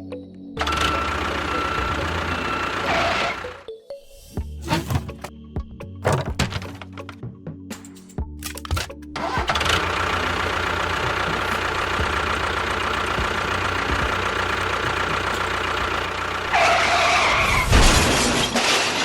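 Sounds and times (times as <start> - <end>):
small engine running: 0.6 - 3.6, 9.2 - 17.3.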